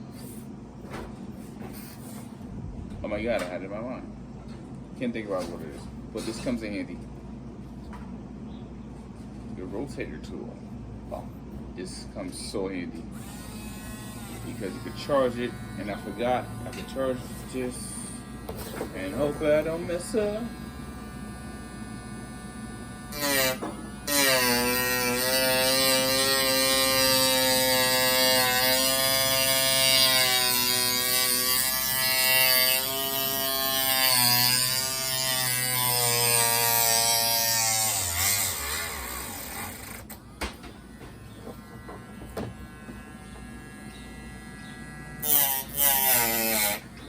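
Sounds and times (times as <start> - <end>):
rotary tool whining: 13.1 - 47.0.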